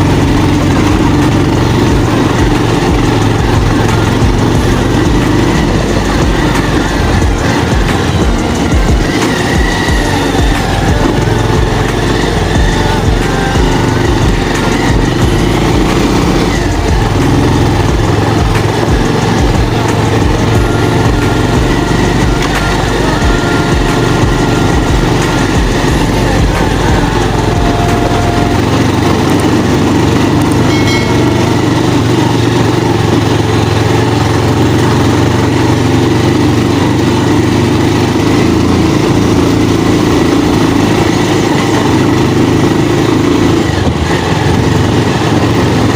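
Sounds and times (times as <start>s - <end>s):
motorcycle engine running: 0.0s - 45.9s
noisy rush: 0.0s - 45.9s.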